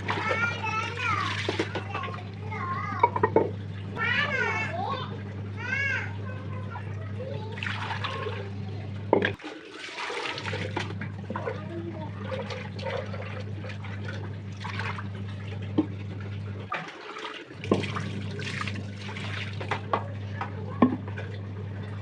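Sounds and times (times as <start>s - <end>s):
water running and splashing: 0.0s - 2.8s, 6.6s - 20.1s
low hum: 17.5s - 22.0s.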